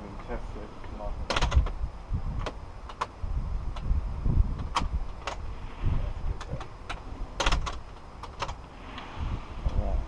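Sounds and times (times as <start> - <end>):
door latch clicking: 1.3 - 1.8, 6.4 - 8.6.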